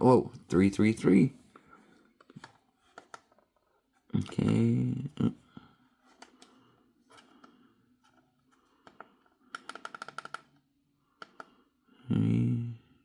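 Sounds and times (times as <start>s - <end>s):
clock touch control taps: 8.9s - 10.5s.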